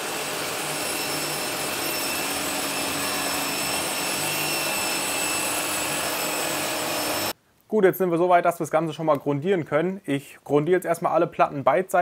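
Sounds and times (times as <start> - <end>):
circular saw cutting: 0.0 - 7.4.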